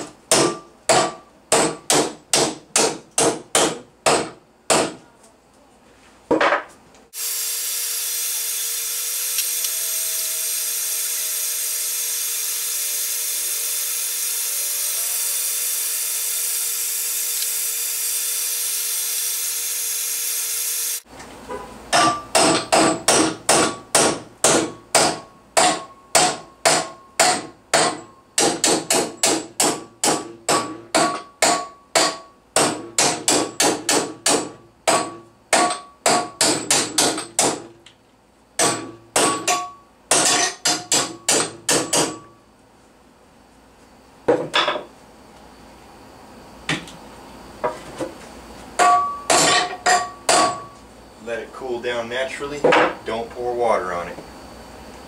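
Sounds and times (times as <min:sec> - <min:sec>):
hammer striking steel rod: 0:00.3 - 0:05.0, 0:21.9 - 0:37.7, 0:38.6 - 0:42.3, 0:48.8 - 0:50.8.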